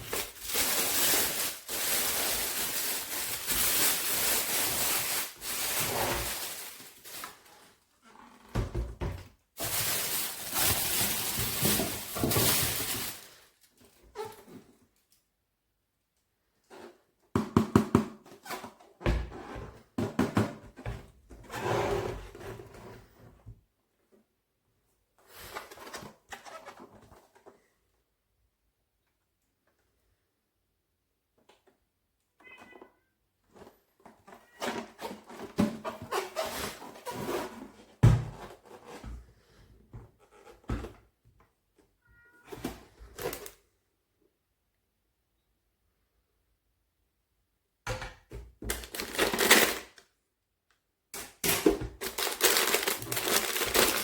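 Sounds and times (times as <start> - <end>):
rustling: 0.0 - 7.8, 9.6 - 13.6, 52.0 - 54.0.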